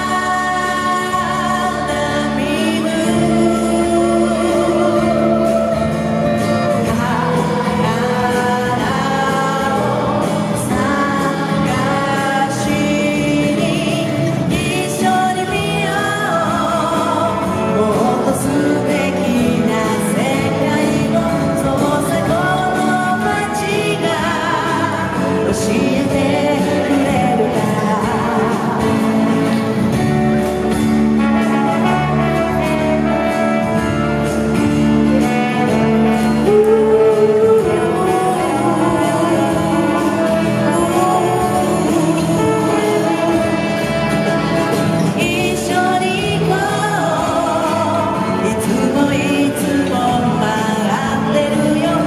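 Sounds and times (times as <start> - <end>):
pop song with vocals: 0.0 - 52.0.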